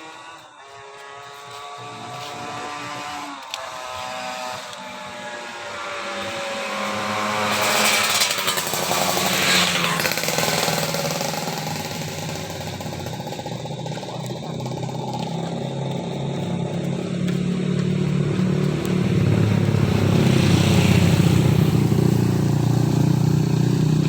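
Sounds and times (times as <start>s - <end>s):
engine running: 0.0s - 24.0s.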